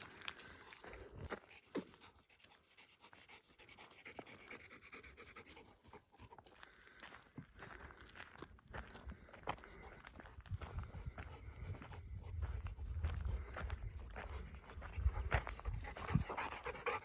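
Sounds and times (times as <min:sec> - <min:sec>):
dog panting: 0:01.2 - 0:06.8, 0:09.6 - 0:17.0.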